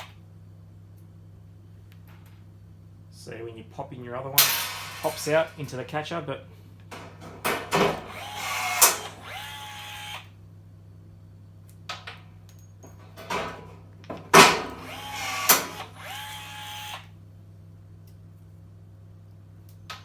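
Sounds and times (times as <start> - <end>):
rivet tool motor whirring: 8.1 - 10.3, 14.8 - 17.1.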